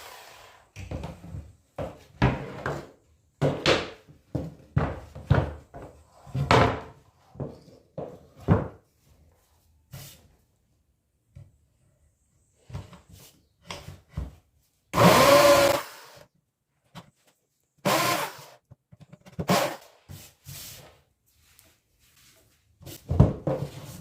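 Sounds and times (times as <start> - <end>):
small power tool motor bursts: 15.0 - 16.2, 17.8 - 18.6.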